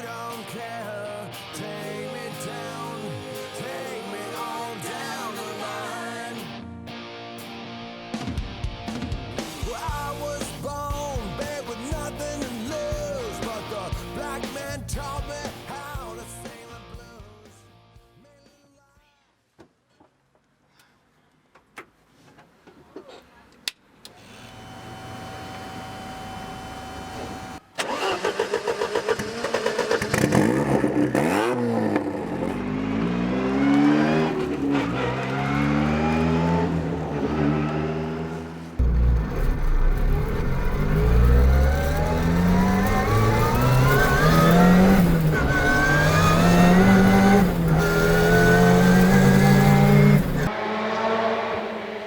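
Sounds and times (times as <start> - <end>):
race car engine accelerating: 24.5 - 52.0.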